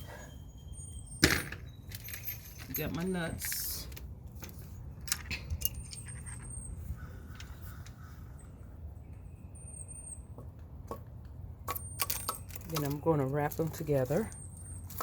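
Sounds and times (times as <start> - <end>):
wire nuts and wires clinking: 1.2 - 6.6, 11.6 - 15.0.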